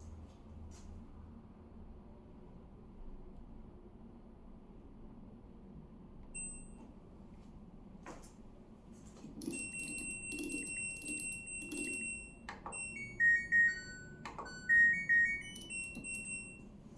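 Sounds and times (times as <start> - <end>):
washing machine beeping: 6.3 - 7.1, 9.2 - 16.9
electronic jingle: 12.8 - 16.7.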